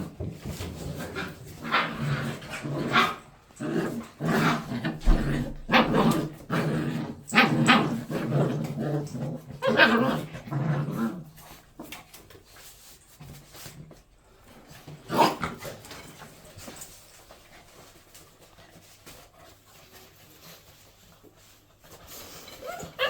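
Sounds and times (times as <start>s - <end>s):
dog barking and growling: 1.1s - 11.2s, 15.0s - 15.8s.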